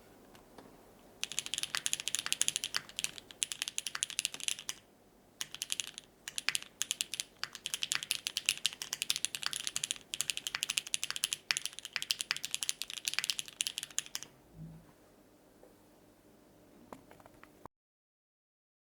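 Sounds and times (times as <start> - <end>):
mechanical keyboard typing: 1.2 - 4.8, 5.4 - 14.3.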